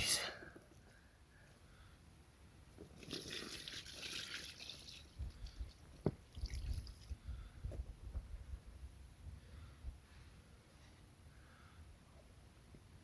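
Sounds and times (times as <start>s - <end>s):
water splashing and trickling: 2.8s - 7.2s.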